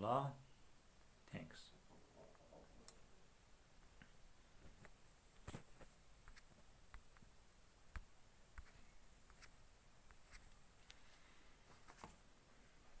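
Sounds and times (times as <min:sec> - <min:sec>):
faint irregular clicks: 0:02.2 - 0:03.1, 0:03.8 - 0:11.2.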